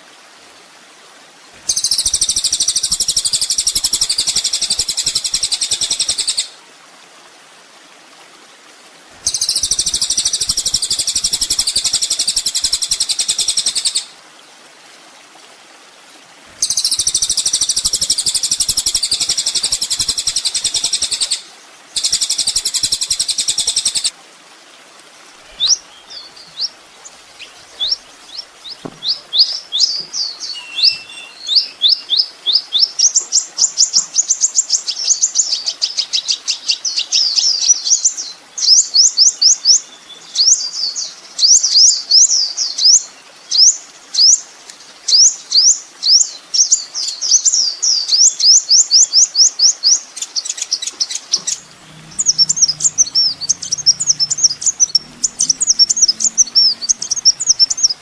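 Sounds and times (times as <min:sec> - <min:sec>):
sunbird singing high trills: 0:27.4 - 0:32.9, 0:48.1 - 0:58.0.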